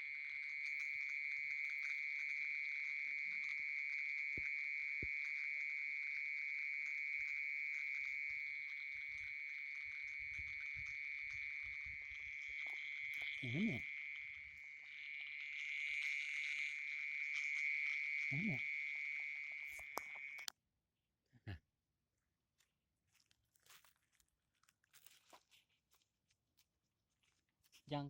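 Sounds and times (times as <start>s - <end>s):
mole cricket trilling: 0.0s - 20.5s.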